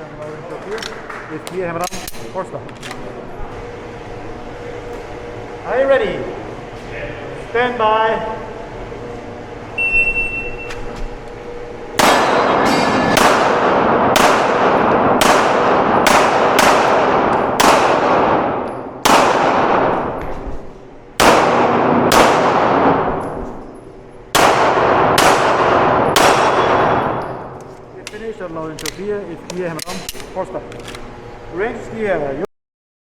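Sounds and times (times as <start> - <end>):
handgun shots with reverberation: 12.0 - 20.4, 21.2 - 23.4, 24.3 - 28.2.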